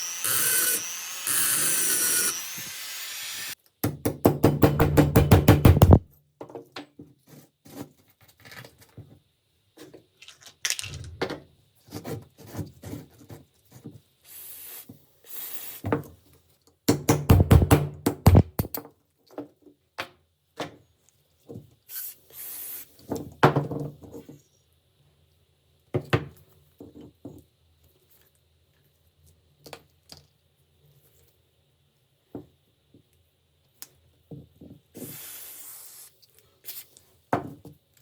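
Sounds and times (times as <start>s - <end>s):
short hissing sprays: 14.3s - 15.8s, 35.0s - 36.9s.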